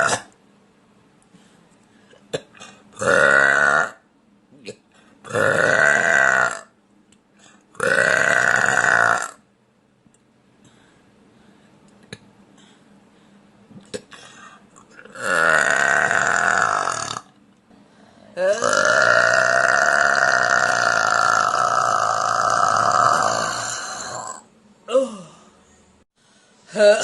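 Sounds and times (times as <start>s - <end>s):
woman burping loudly: 2.3s - 4.0s, 4.6s - 6.7s, 7.7s - 9.4s, 15.0s - 17.3s, 18.4s - 24.5s.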